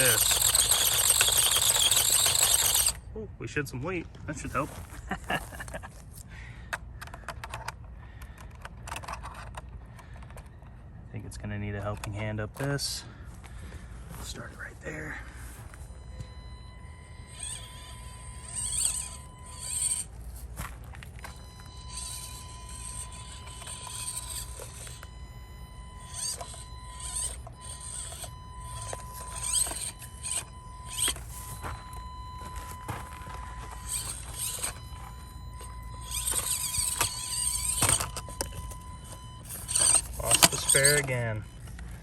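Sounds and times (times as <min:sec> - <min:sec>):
small electric motor whining: 0:00.0 - 0:03.0, 0:15.1 - 0:42.0.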